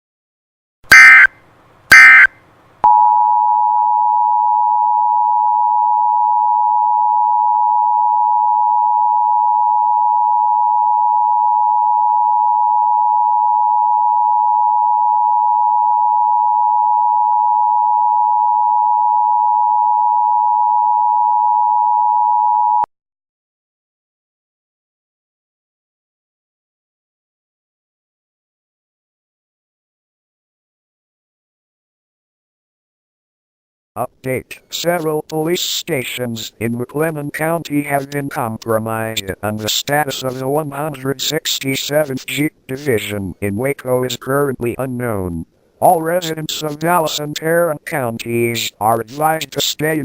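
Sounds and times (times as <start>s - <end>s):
shrill digital data bursts: 0.9s - 1.3s, 1.9s - 2.3s
two-tone attention signal: 0.9s - 1.3s, 1.9s - 2.3s.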